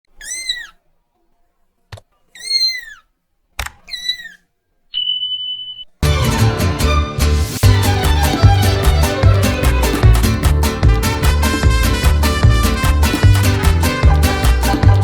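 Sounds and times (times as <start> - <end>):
cat meowing: 0.2 - 0.8, 2.3 - 3.1, 3.8 - 5.8
steady high beep: 5.0 - 6.0
music with a strong beat: 6.0 - 15.0.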